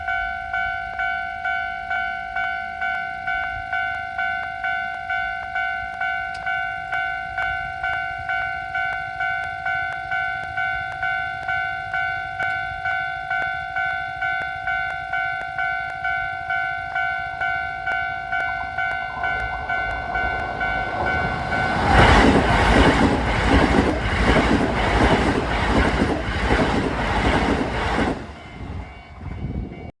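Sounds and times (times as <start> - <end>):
level-crossing warning bell: 0.0 - 29.9
train rumbling past: 16.4 - 29.9
wheels clacking over rail joints: 17.5 - 28.5.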